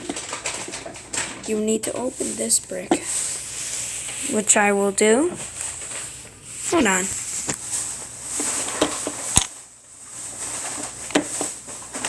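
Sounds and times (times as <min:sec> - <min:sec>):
plastic bricks clicking apart: 0:08.8 - 0:09.6.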